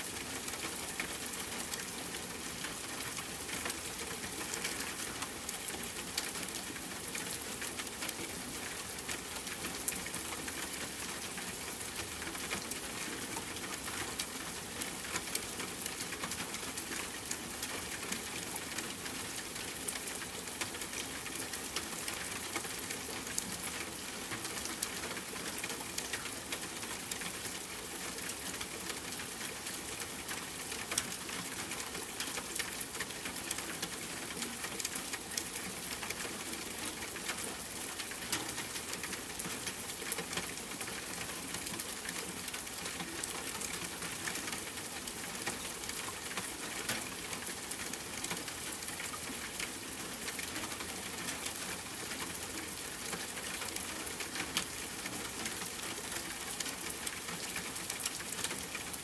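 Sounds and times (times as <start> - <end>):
rain pattering: 0.0 - 59.0.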